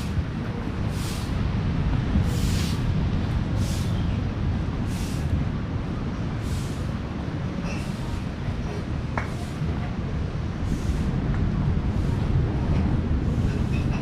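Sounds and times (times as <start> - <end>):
ocean surf rumble: 0.0 - 14.0.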